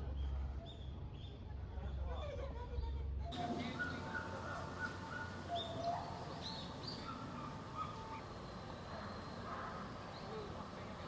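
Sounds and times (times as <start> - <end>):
low background hum: 0.0 - 11.0
monkeys chirping and peeping: 3.4 - 11.0.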